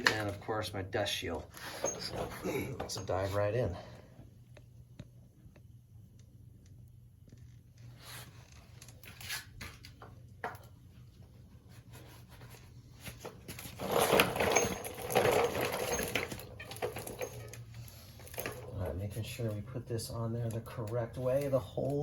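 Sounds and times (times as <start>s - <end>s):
metal parts clicking and knocking: 13.6s - 18.7s.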